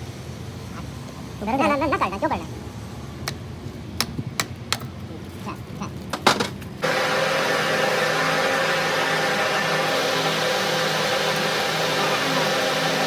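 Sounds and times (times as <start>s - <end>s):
machine hissing and humming: 6.8s - 13.0s.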